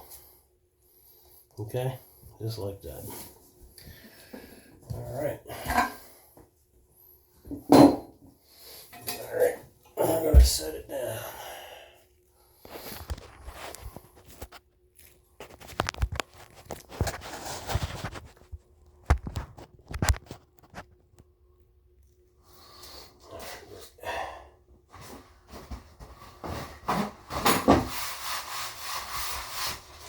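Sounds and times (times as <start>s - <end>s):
rustling and scraping: 12.5s - 21.2s, 24.9s - 30.0s.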